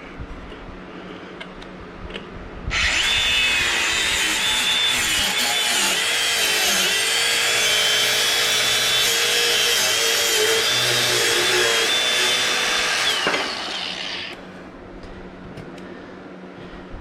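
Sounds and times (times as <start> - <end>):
power tool motor whining: 2.7 - 14.4.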